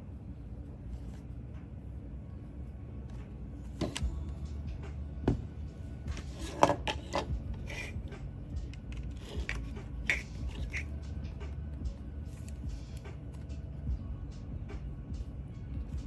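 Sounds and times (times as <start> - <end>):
low steady hum: 0.0 - 16.0
objects clicking and knocking: 6.2 - 7.9.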